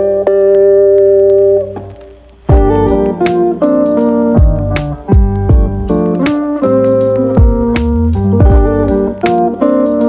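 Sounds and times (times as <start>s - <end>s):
sustained guitar notes: 0.0s - 10.0s
deep bass hit: 2.5s - 3.1s, 4.4s - 6.0s, 7.4s - 9.1s.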